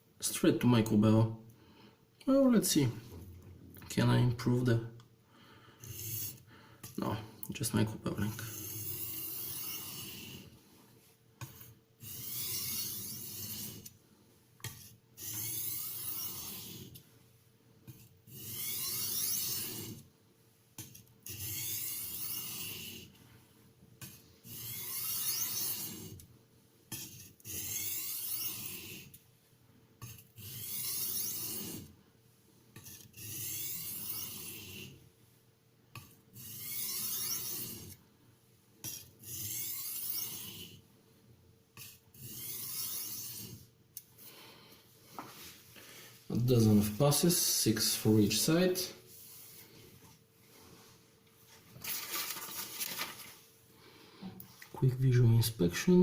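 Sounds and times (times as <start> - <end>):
knife strokes on a whetstone: 5.8 - 7.2, 8.2 - 14.0, 14.6 - 23.2, 24.0 - 26.2, 26.8 - 29.2, 30.0 - 35.4, 36.0 - 40.8, 41.8 - 43.8, 45.1 - 51.6.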